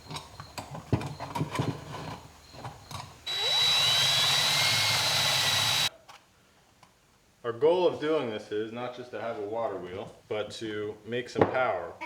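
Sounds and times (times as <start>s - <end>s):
knocks and clicks of parts handled: 0.0s - 3.2s
power drill whining: 1.2s - 5.9s.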